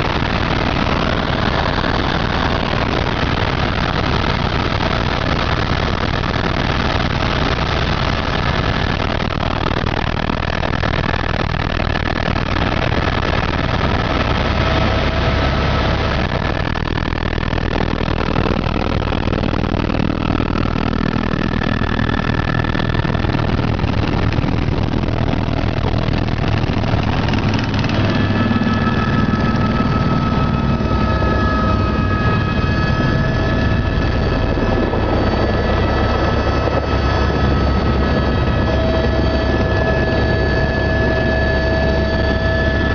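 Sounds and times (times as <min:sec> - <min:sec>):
turbine whine: 0:00.0 - 0:42.9
helicopter rotor thump: 0:15.7 - 0:42.8.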